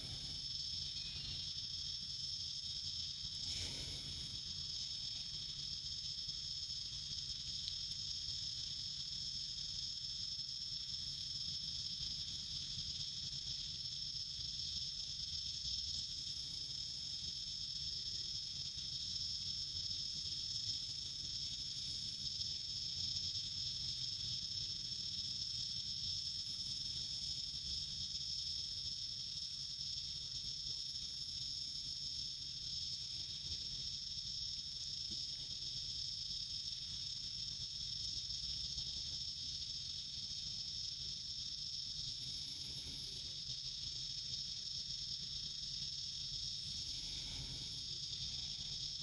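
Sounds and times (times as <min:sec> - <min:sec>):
insects chorus: 0:00.0 - 0:49.0.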